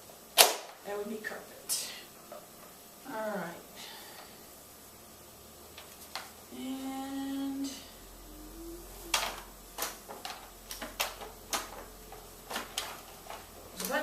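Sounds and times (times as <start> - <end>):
man humming: 6.5 - 9.6.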